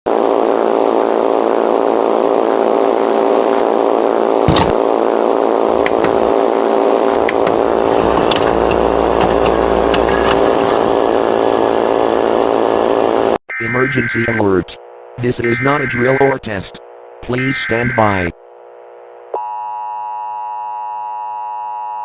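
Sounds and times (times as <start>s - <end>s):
loud electrical buzz: 5.7s - 6.4s, 7.1s - 13.4s
static hiss: 7.1s - 13.4s.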